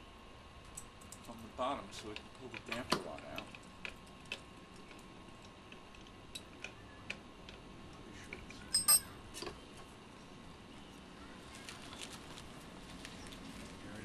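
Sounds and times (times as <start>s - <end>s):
ringing metal clink: 8.7s - 9.2s.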